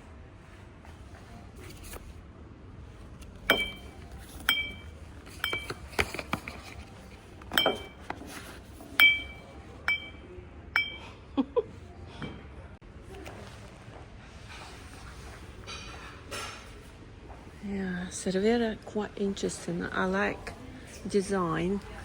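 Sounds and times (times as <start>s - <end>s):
glass tumblers clinking: 3.5s - 10.2s, 10.8s - 11.1s.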